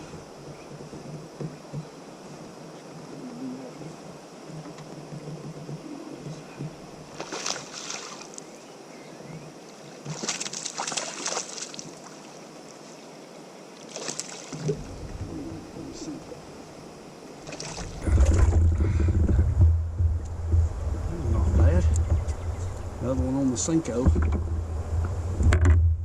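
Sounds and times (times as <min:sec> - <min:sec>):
water splashing around kayak: 0:06.6 - 0:08.6, 0:09.7 - 0:12.8, 0:13.7 - 0:22.6
loud low rumble: 0:18.0 - 0:23.4.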